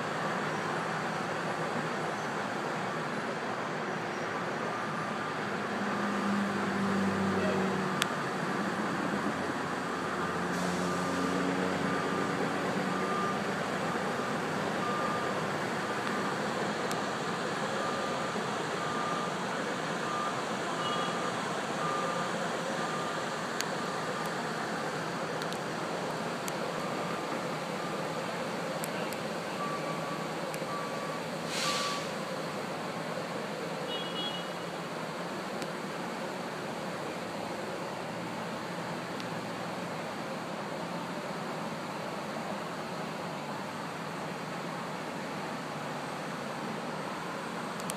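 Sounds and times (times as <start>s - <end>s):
diesel machinery running: 0.0s - 47.9s
reversing alarm beeping: 10.2s - 15.5s, 16.2s - 24.6s, 29.0s - 32.1s
short hiss of air: 10.5s - 11.2s, 31.4s - 32.2s
backup alarm beeping: 14.8s - 15.4s.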